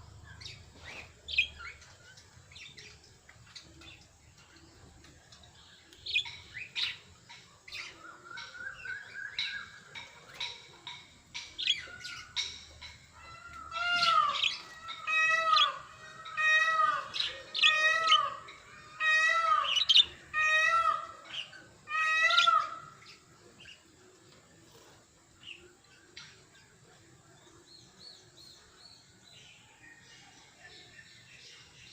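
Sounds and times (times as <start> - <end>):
loud bird calls: 0.0 - 24.1
budgerigars chirping: 11.4 - 23.2.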